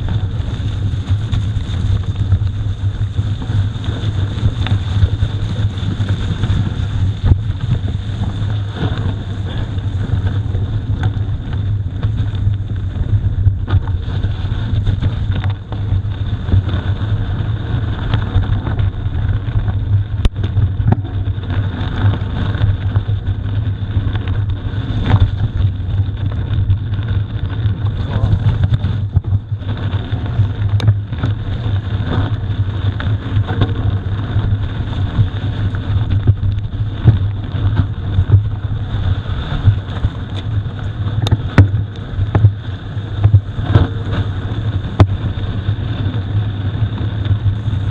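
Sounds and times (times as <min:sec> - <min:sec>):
bike rattles and knocks: 0:00.0 - 0:47.9
bike tyre rumble on gravel: 0:00.0 - 0:47.9
wind buffeting microphone: 0:00.0 - 0:47.9.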